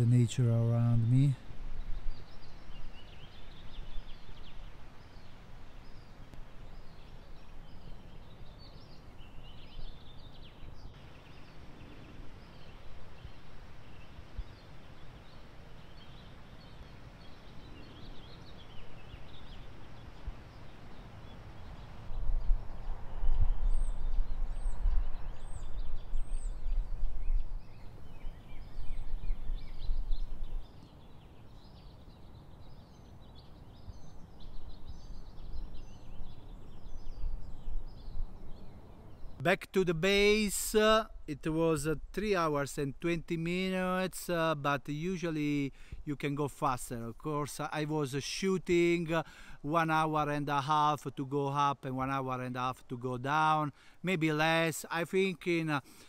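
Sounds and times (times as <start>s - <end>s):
small birds chirping: 0.0s - 56.0s
wind buffeting microphone: 17.1s - 39.4s.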